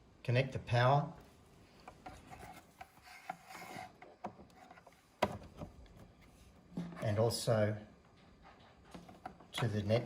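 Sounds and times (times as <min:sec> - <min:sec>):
cable handling rubbing and clicks: 0:01.7 - 0:07.0.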